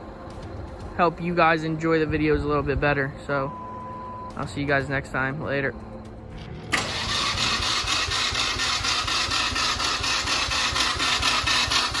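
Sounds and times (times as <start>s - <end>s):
engine running with fast clatter: 6.2s - 12.0s.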